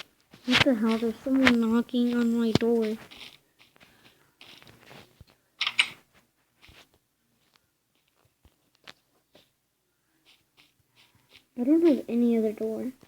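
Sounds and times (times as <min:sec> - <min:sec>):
irregular clicks and taps: 0:00.0 - 0:09.6
rustling: 0:00.0 - 0:13.0.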